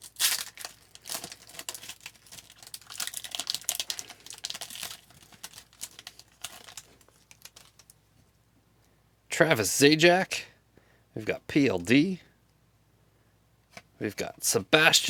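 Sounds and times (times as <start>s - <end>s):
foil wrapper crinkling: 0.0s - 8.0s.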